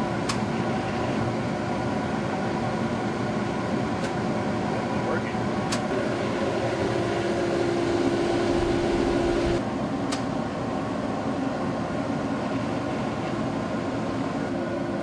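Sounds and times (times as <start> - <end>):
electrical hum and rumble: 0.0 - 15.0
steady machine noise: 0.0 - 15.0
sharp click: 10.1 - 10.3.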